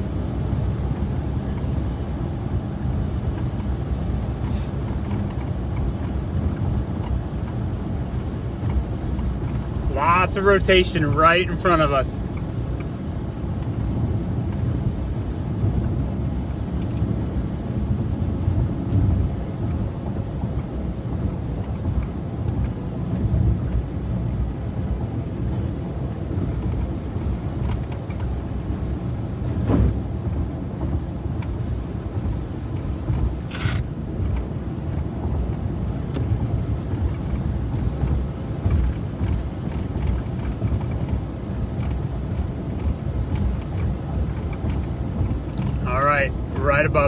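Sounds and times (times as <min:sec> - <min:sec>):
road and engine rumble in car: 0:00.0 - 0:47.0
short hiss: 0:33.5 - 0:33.8.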